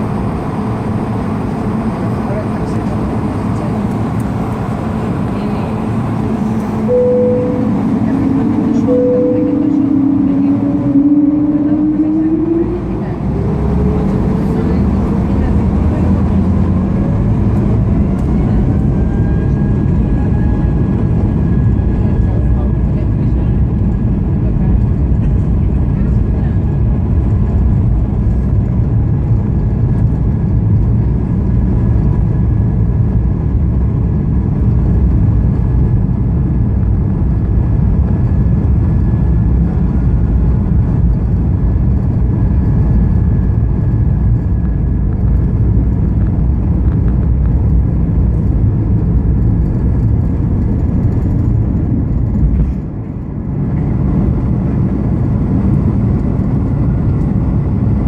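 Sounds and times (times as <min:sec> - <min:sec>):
airliner cabin rush: 0:00.0 - 0:58.0
faint steady whine: 0:05.5 - 0:13.2.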